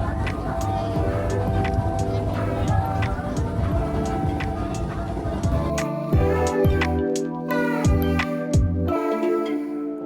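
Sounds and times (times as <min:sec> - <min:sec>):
sustained instrumental chords: 0:00.0 - 0:10.0.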